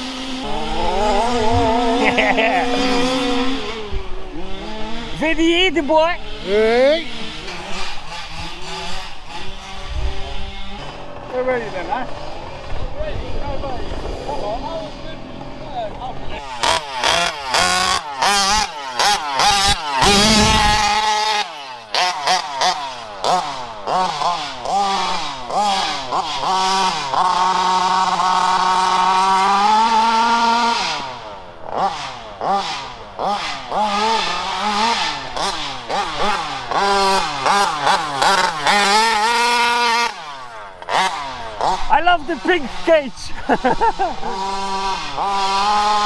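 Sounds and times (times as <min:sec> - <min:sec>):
small petrol engines revving: 0:00.0 - 0:46.0.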